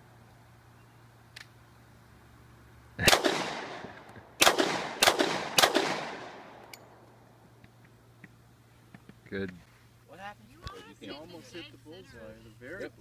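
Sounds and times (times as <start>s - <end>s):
gunshots with echo: 3.0s - 6.6s.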